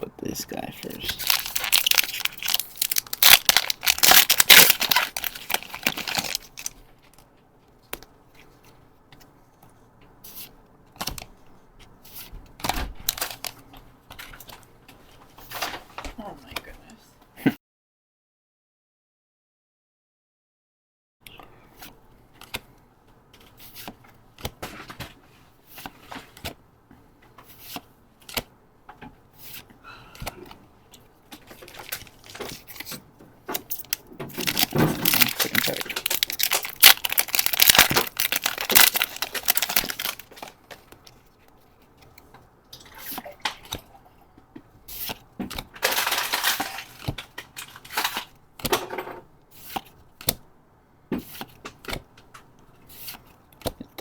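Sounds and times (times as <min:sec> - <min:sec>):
foil wrapper crinkling and tearing: 0:01.0 - 0:06.8, 0:13.1 - 0:13.6, 0:31.5 - 0:33.0, 0:33.6 - 0:40.6, 0:45.8 - 0:48.3.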